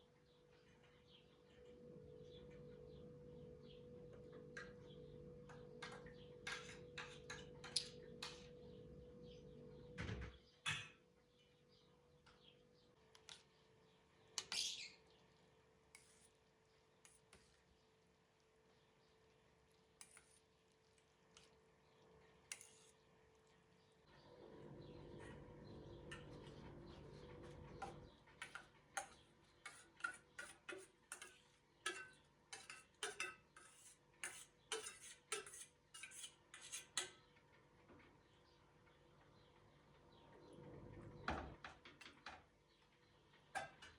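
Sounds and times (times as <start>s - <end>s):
utensils and dishes clinking: 27.9s - 37.1s.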